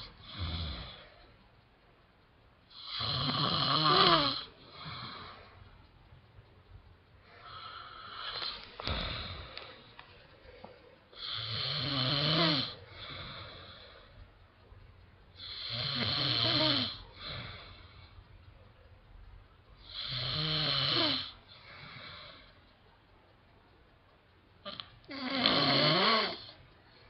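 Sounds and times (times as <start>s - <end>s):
man snoring heavily: 0.2s - 1.1s, 2.7s - 5.4s, 7.4s - 9.5s, 11.2s - 13.8s, 15.4s - 17.7s, 19.8s - 22.3s, 24.7s - 26.5s.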